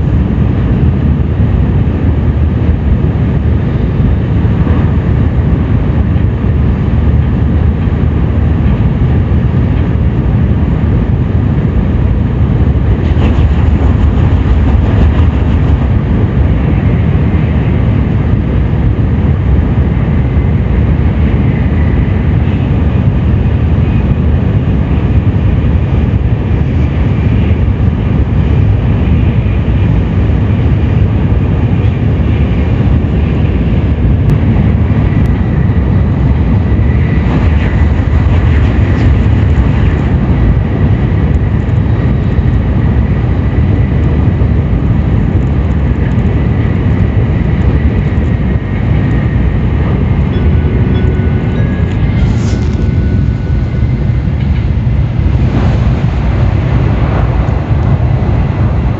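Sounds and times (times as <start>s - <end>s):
train rumbling at speed: 0.0s - 58.9s
faint high whine: 48.5s - 58.9s.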